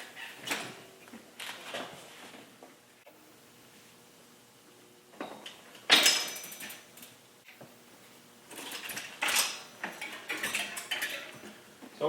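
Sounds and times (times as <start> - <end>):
bicycle metal clanking: 8.5 - 11.6.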